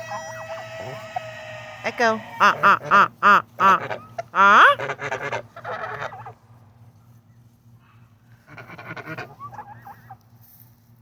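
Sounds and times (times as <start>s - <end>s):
goose honking: 0.0s - 6.5s, 8.3s - 10.2s.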